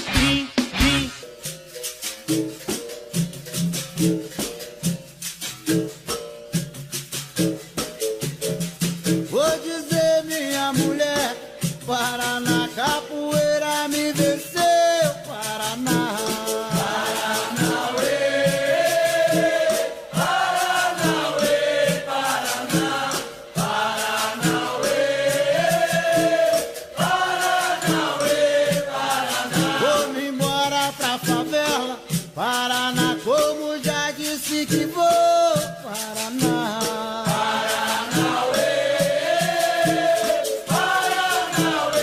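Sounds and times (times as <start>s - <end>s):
percussive beat: 0.0s - 42.0s
person singing: 9.3s - 19.5s, 27.0s - 38.6s.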